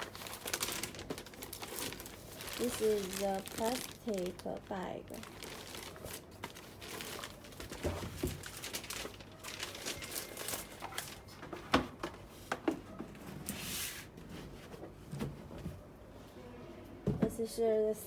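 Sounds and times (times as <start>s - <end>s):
plastic bag crinkling: 0.0s - 11.3s.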